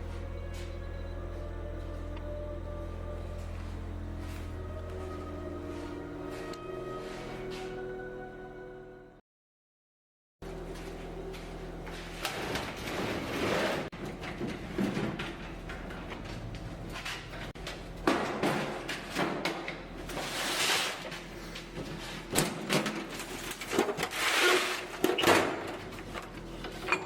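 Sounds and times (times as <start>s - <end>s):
low steady hum: 0.0s - 9.2s
workshop knocks and clanks: 10.8s - 20.4s, 21.0s - 27.0s.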